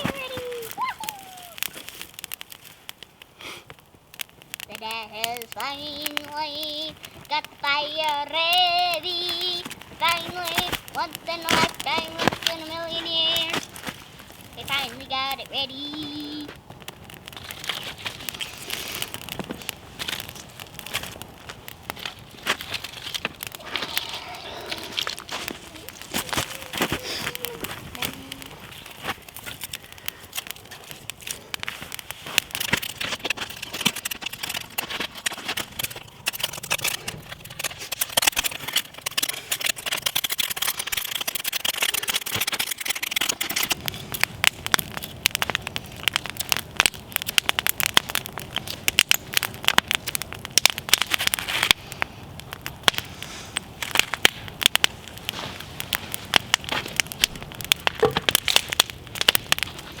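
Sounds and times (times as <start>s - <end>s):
campfire crackling and popping: 0.0s - 60.0s.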